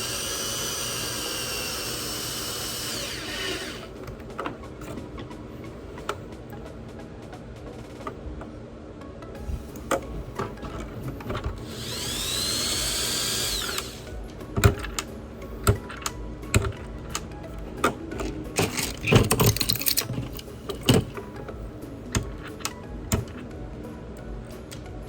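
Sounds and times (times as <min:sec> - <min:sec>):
power tool motor whirring: 0:00.0 - 0:04.0, 0:11.6 - 0:14.8
tools clicking and tapping: 0:09.8 - 0:23.5.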